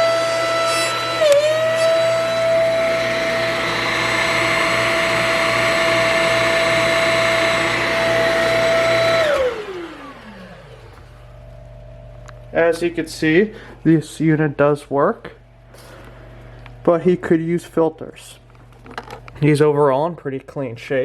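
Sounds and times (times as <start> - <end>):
vacuum cleaner motor whine: 0.0 - 12.3.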